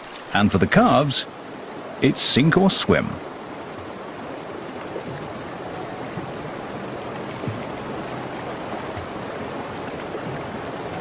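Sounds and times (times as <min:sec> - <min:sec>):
river water rushing: 0:00.0 - 0:11.0
animals splashing in water: 0:03.3 - 0:11.0.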